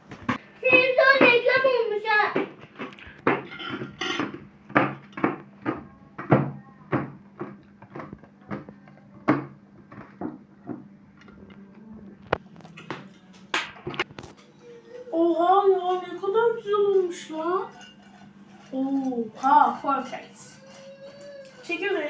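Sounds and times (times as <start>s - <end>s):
knife chopping on cutting board: 2.4s - 8.7s.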